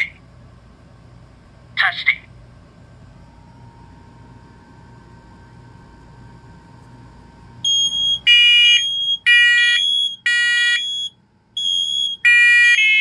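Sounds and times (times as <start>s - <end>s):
smoke alarm beep: 7.6s - 13.0s
smoke alarm horns beeping: 7.6s - 13.0s.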